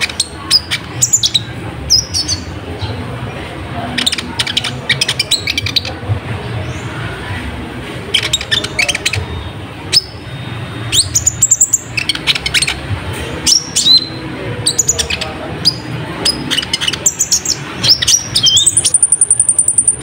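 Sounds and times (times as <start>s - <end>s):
sunbird chirps and whistles: 8.1s - 12.8s, 13.4s - 20.0s.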